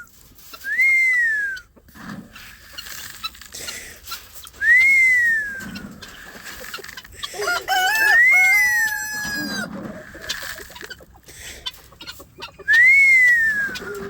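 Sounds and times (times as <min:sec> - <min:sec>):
chickens clucking: 0:00.0 - 0:14.0
person whistling: 0:00.6 - 0:01.6, 0:04.6 - 0:05.7, 0:12.7 - 0:14.0
rooster crowing: 0:07.4 - 0:09.7.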